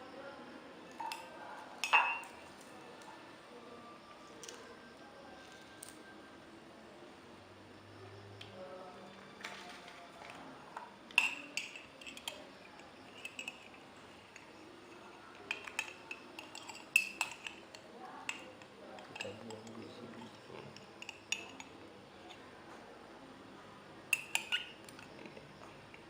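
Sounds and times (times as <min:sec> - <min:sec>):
metal spoon clinking on glass: 0:00.9 - 0:02.4, 0:11.1 - 0:22.4, 0:24.1 - 0:25.3.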